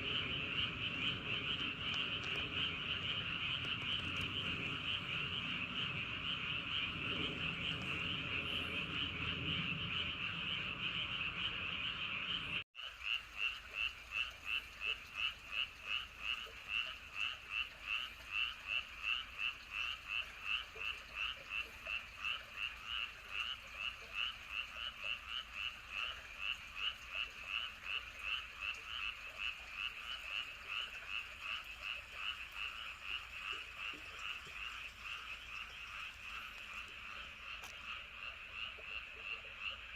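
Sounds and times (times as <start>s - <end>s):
low wind rumble: 0.0s - 12.6s
frogs calling in chorus: 0.0s - 39.9s.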